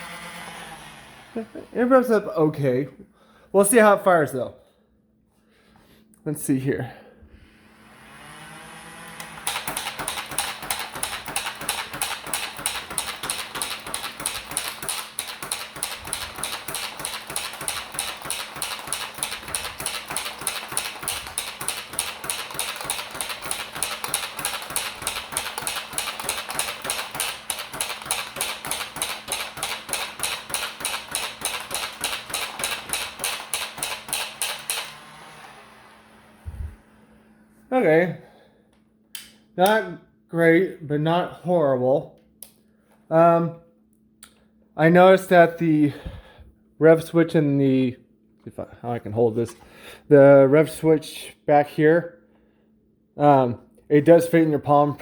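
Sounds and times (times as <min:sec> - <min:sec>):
toy blaster motor whine: 0:00.0 - 0:01.6, 0:07.8 - 0:36.6
toy blaster firing clatter: 0:09.0 - 0:35.1.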